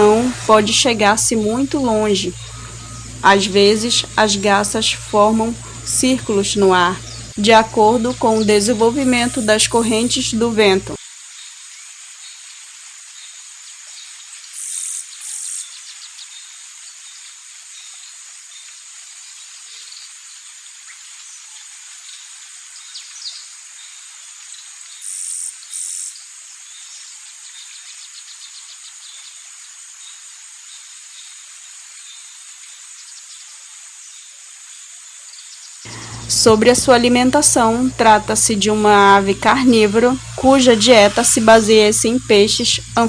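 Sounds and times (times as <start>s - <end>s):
ticking chirps: 0.0s - 11.0s, 35.9s - 43.0s
insects buzzing drone: 0.0s - 28.2s, 28.9s - 43.0s
short high bird calls: 2.0s - 6.3s, 35.9s - 37.1s.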